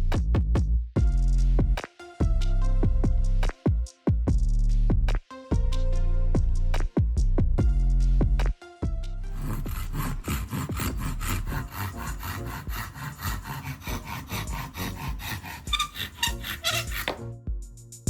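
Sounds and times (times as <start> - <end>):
hand saw cutting wood: 9.3 - 17.2.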